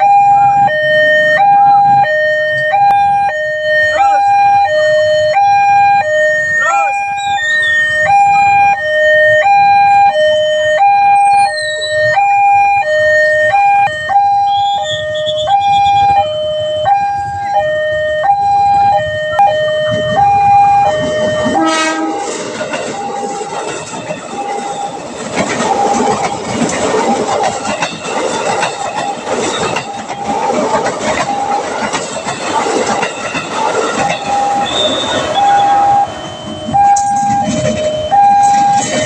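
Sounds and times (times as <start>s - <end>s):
level crossing two-tone alarm: 0.0s - 39.0s
train wheels rumbling: 14.8s - 39.0s
train horn blast: 21.0s - 22.5s, 34.6s - 37.4s.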